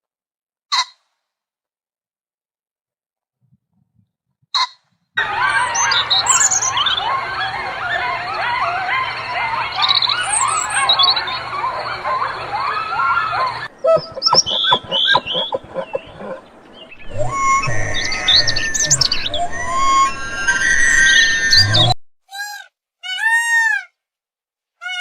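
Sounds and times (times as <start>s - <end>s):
short sharp calls: 5.2s - 21.9s
birds chirping chorus: 5.2s - 22.0s.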